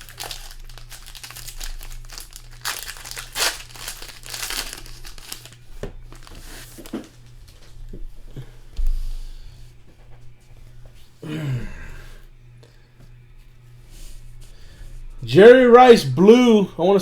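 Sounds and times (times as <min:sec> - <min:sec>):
plastic wrapping crinkling: 0:00.0 - 0:07.8.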